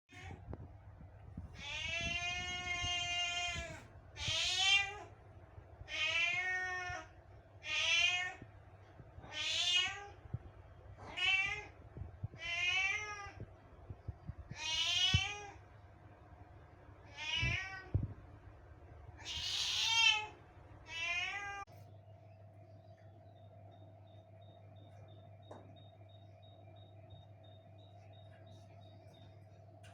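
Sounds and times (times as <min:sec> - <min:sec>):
cat meowing: 0:01.6 - 0:05.1, 0:05.9 - 0:08.4, 0:09.2 - 0:10.2, 0:11.1 - 0:11.7, 0:12.3 - 0:13.4, 0:14.5 - 0:15.6, 0:17.1 - 0:18.0, 0:19.2 - 0:21.7.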